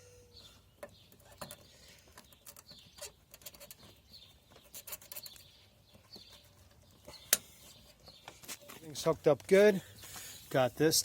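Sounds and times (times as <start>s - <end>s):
faint bird chirps: 0.0s - 8.4s.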